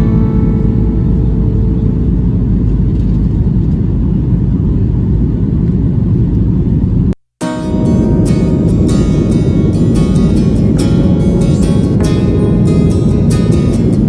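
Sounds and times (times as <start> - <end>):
vehicle low rumble: 0.0 - 14.0.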